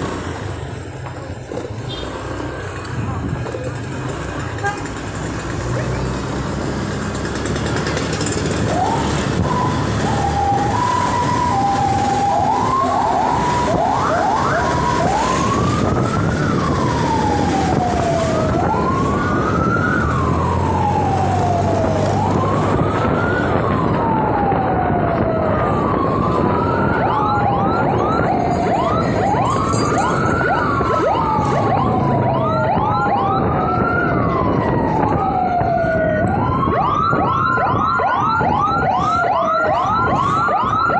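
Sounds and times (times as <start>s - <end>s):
road and engine noise: 0.0s - 40.9s
ambulance siren: 8.2s - 40.9s.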